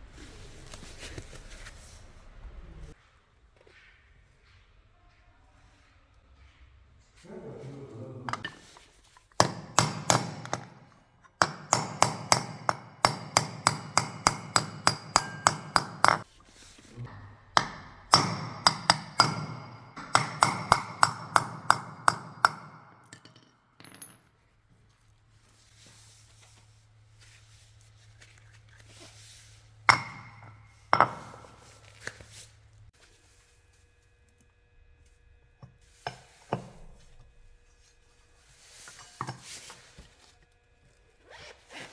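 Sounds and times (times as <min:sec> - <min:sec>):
hammer striking metal: 0:09.3 - 0:16.3, 0:17.1 - 0:23.4, 0:29.9 - 0:31.6.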